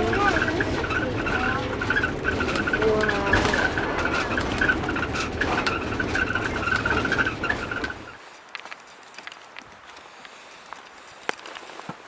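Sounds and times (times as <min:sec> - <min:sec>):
high-pitched chattering rattle: 0:00.0 - 0:08.1
vehicle engine and tyre rumble: 0:00.0 - 0:12.0.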